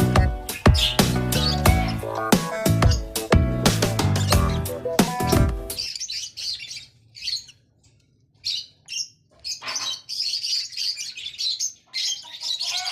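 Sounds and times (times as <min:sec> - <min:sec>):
music: 0:00.0 - 0:05.8
lovebirds chirping: 0:00.0 - 0:12.9.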